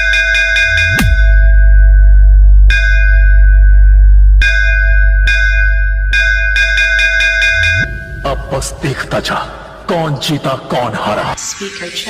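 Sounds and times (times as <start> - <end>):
deep sub-bass: 0.6 - 6.9.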